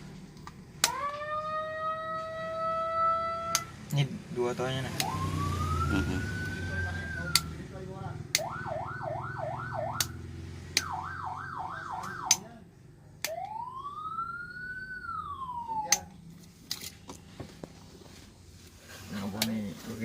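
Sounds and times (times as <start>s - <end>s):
fire truck siren wail and yelp: 0.8s - 3.9s, 4.9s - 7.6s, 8.3s - 12.4s, 13.2s - 16.1s
sharp switch clicks: 13.2s - 13.5s.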